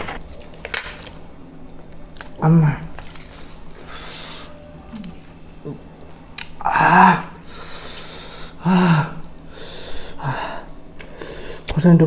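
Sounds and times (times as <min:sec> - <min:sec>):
person crying ah: 0:06.6 - 0:07.4
person gasping and hissing: 0:06.6 - 0:11.7.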